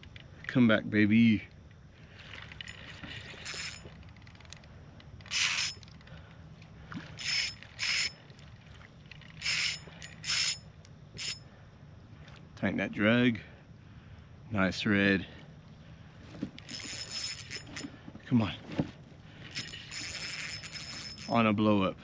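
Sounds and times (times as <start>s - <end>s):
fishing reel drag buzzing: 2.1s - 6.3s, 7.0s - 8.2s, 9.2s - 11.6s, 16.6s - 18.0s, 19.3s - 21.5s.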